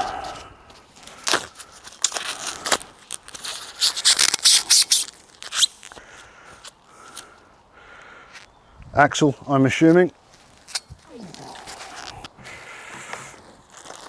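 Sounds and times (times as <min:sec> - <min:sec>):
packaging crackling and tearing: 0:00.8 - 0:06.0, 0:10.4 - 0:14.0.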